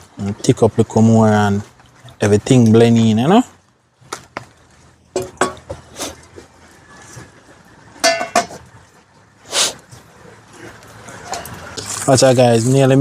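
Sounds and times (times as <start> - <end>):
utensil clinking against cooking pot: 5.1 - 5.8, 8.0 - 8.6.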